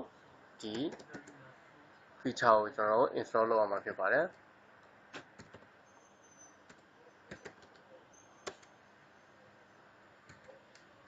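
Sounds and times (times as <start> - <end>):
keyboard and mouse clicks: 5.2 - 5.7, 6.7 - 8.7, 10.3 - 10.9.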